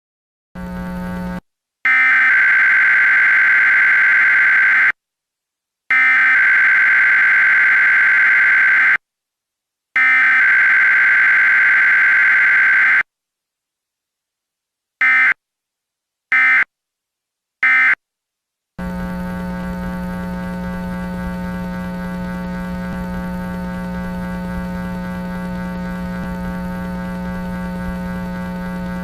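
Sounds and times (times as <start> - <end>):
low buzz: 0.6 - 1.4, 18.8 - 29.0.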